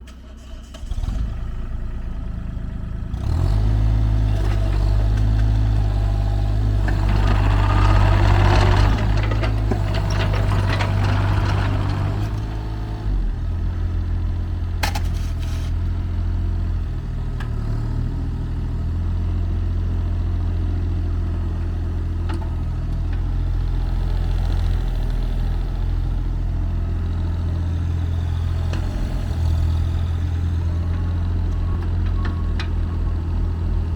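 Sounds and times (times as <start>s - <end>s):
excavator diesel engine running: 0.0s - 33.9s
rattling: 6.6s - 13.1s.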